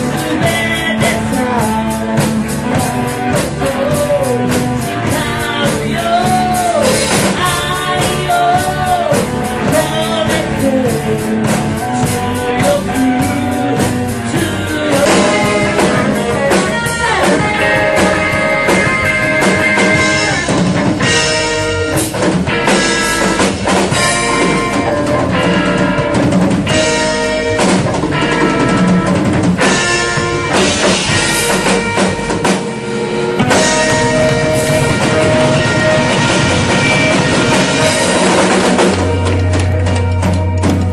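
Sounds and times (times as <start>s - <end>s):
person singing: 0.0s - 21.6s
drum kit beat: 0.0s - 40.9s
guitar: 0.0s - 40.9s.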